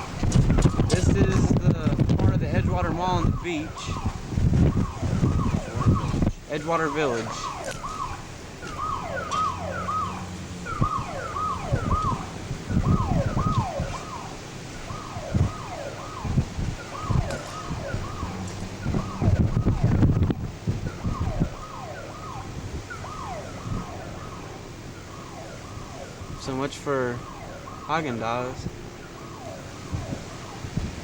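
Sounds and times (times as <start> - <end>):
low rumbling and thumps: 0.0 - 6.5, 15.2 - 21.6.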